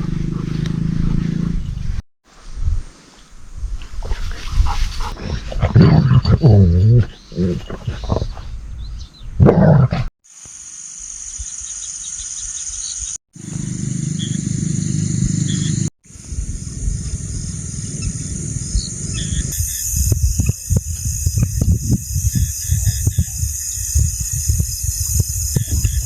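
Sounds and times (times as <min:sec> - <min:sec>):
crickets trilling: 0:10.3 - 0:26.0.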